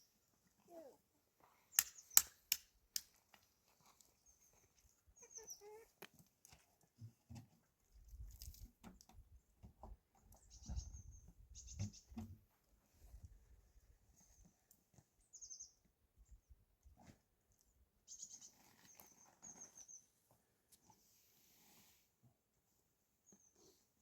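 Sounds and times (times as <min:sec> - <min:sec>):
small birds chirping: 0:01.7 - 0:02.4, 0:04.0 - 0:06.1, 0:10.3 - 0:12.2, 0:14.2 - 0:16.6, 0:17.6 - 0:20.2, 0:23.2 - 0:23.8.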